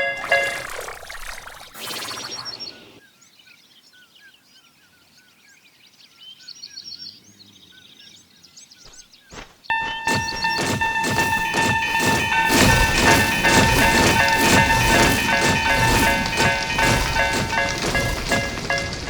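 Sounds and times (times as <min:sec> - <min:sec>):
bird chirping: 0:00.0 - 0:05.0
loud steady pitched tone: 0:09.7 - 0:19.0
noisy rush: 0:10.0 - 0:19.0.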